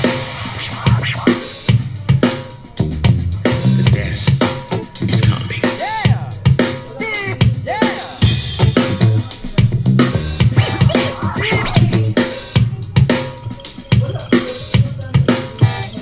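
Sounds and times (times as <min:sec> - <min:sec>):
swooping scratch-like pitch sweeps: 0:00.0 - 0:02.0, 0:10.0 - 0:12.4
music with drum-kit beat: 0:00.0 - 0:16.0.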